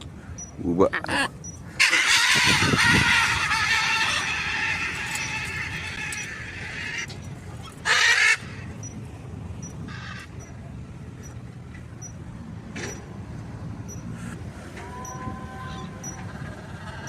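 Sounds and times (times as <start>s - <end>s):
macaw screeching: 0.4s - 9.0s.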